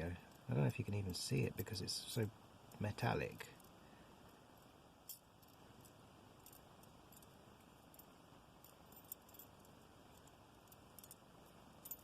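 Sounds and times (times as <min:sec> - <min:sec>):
low room hiss: 0:00.0 - 0:12.0
metal wire puzzle clinking: 0:05.0 - 0:12.0.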